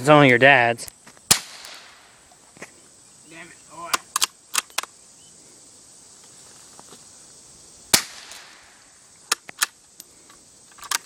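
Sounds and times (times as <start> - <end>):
gunshots: 1.3 - 2.0, 7.9 - 8.6.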